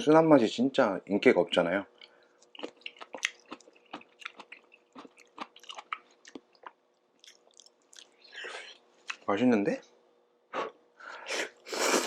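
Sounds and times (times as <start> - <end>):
person chewing noodles: 2.0 - 9.2.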